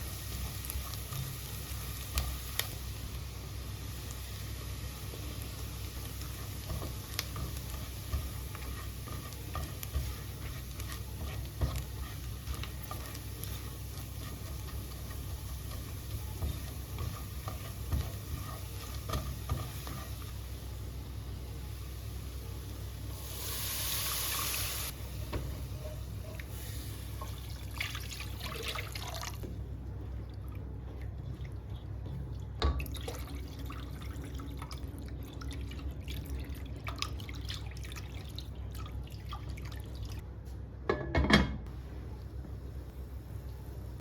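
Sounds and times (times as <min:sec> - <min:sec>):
water running at sink: 0:27.1 - 0:29.5, 0:30.2 - 0:40.2.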